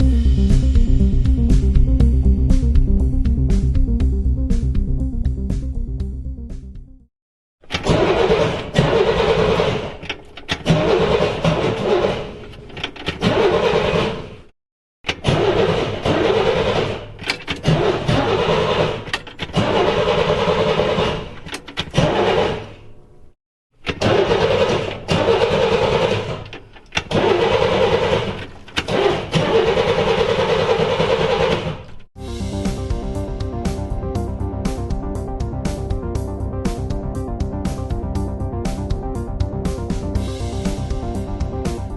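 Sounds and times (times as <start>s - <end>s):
music: 0.0s - 7.1s, 32.2s - 41.9s
car engine cranking: 7.6s - 14.5s, 15.1s - 32.1s.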